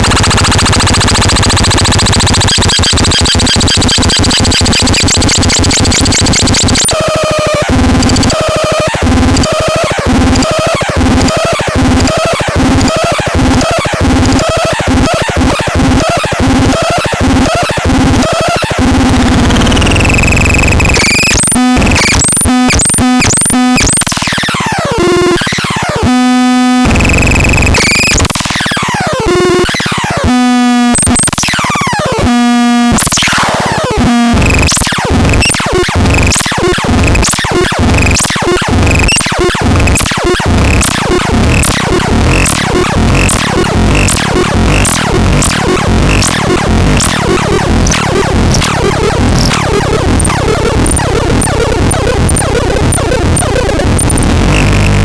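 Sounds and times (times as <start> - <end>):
fast electronic beat: 0.0 - 24.4, 26.8 - 29.5, 30.8 - 31.7, 32.8 - 55.0
short pitched electronic tones: 32.4 - 55.0
synthesized sweeping zaps: 39.8 - 55.0.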